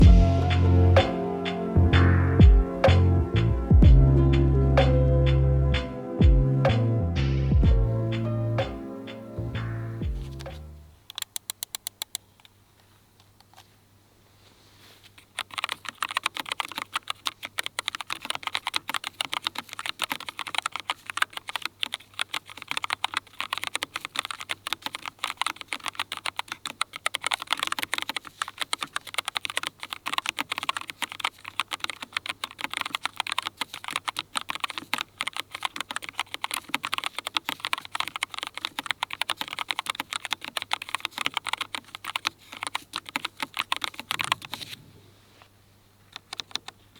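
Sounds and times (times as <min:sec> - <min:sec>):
fast mechanical keyboard typing: 0:11.1 - 0:12.2, 0:15.2 - 0:44.8, 0:46.2 - 0:46.8.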